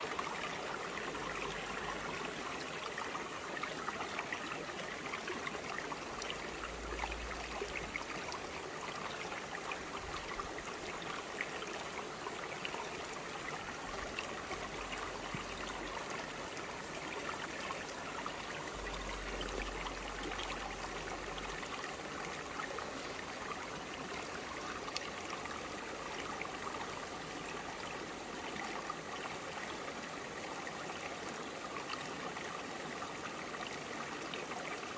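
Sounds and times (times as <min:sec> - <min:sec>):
water trickles and splashes: 0:00.0 - 0:34.9.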